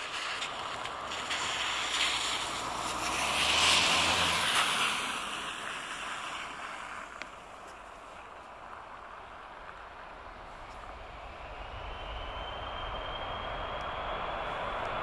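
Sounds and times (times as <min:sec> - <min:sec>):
jet engines passing: 0:08.8 - 0:15.0.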